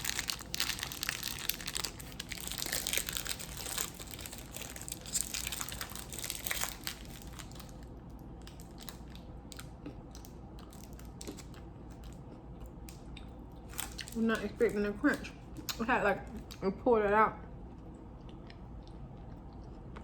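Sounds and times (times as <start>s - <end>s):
wrapper crinkling and tearing: 0.0s - 11.6s, 13.6s - 14.8s
crunching bites and chewing: 0.0s - 14.2s, 17.6s - 20.0s.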